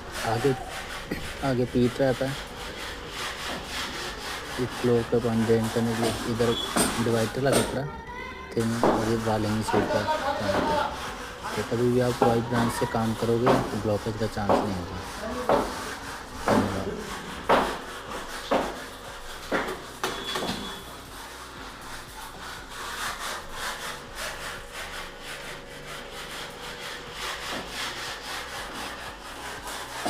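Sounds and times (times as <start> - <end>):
gritty scraping and rubbing: 0.0 - 7.8, 8.6 - 30.0
sharp knocks: 17.4 - 17.8.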